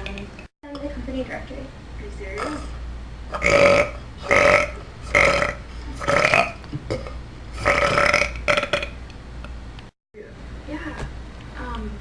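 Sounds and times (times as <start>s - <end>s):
person burping: 3.3s - 9.0s.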